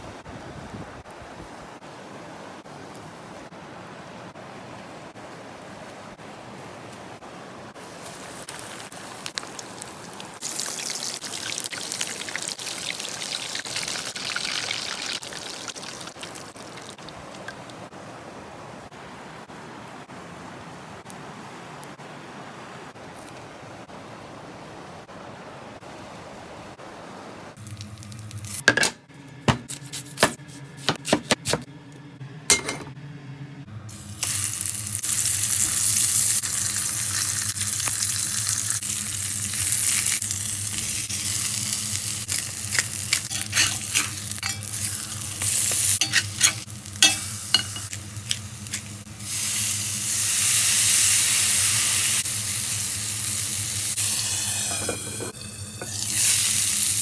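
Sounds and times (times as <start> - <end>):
food sizzling in a pan: 7.8 - 17.0, 33.9 - 57.0
utensil stirring clicks and scrapes: 42.3 - 48.9.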